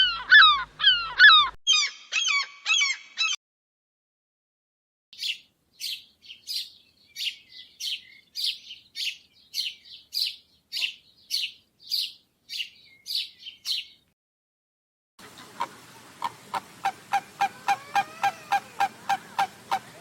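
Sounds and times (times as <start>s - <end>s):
bird chirping: 0.0s - 3.4s, 5.2s - 14.1s.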